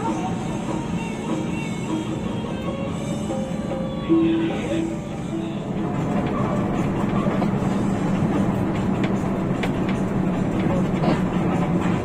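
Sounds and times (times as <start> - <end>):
bus diesel engine drone: 0.0 - 12.0
road noise: 0.0 - 12.0
bus body rattling: 5.4 - 12.0.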